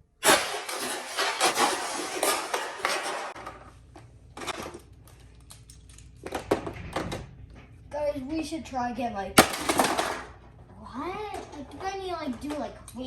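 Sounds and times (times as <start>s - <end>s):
plastic toy pieces clattering: 0.2s - 3.7s, 9.4s - 10.4s.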